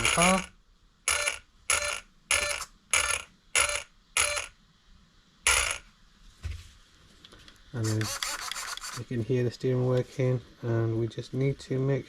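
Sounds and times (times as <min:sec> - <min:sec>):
steering servo whirring: 0:07.9 - 0:09.0.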